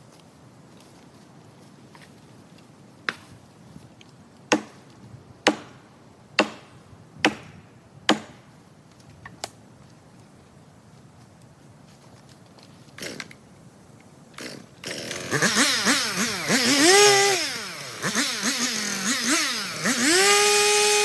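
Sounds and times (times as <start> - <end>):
tool chopping into wood: 4.5 - 8.5.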